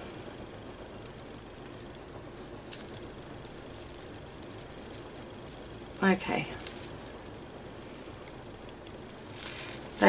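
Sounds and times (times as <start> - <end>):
beads clinking: 1.0 - 7.5, 8.6 - 10.0.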